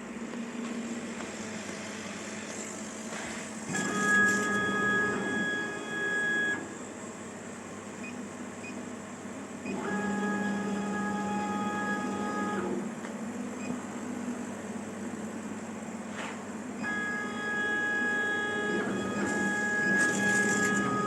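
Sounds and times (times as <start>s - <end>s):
stepper motors whining: 18.6s - 21.0s.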